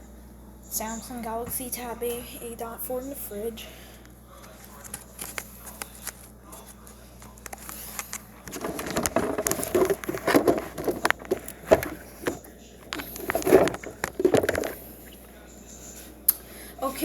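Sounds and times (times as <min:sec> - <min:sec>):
rustling knocking and clicking: 0:07.2 - 0:15.2.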